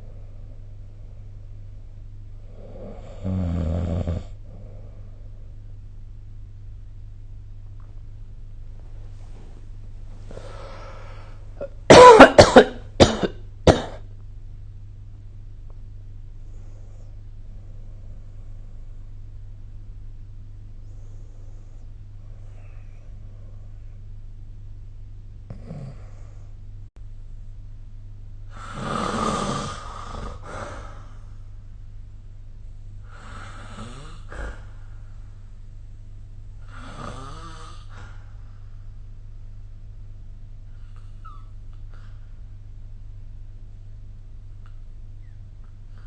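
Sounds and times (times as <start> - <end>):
steady low hum: 0.0 - 46.0
person snoring: 2.4 - 5.0, 25.5 - 26.5, 28.5 - 31.3, 33.1 - 34.8, 36.6 - 38.3
person coughing: 11.6 - 14.1.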